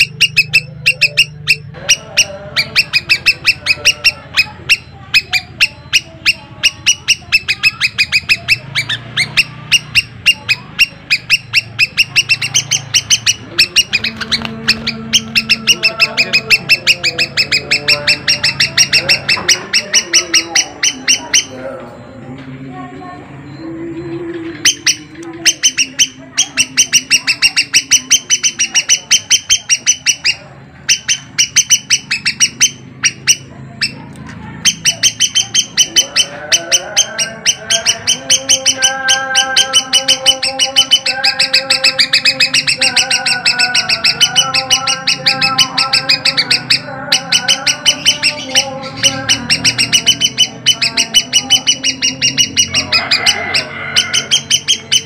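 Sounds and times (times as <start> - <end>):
bird chirping rapidly: 0.0 - 22.1, 23.4 - 55.0.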